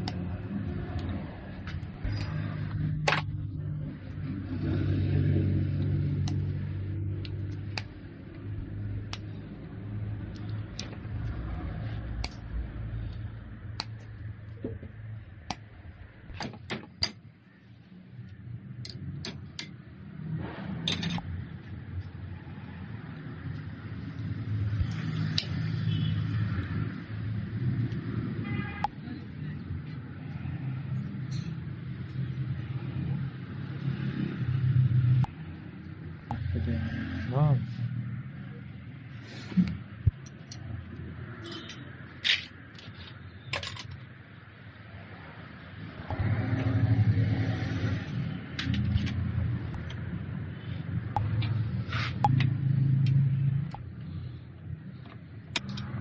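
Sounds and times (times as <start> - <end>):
scattered clicks: 55.1 - 56.0.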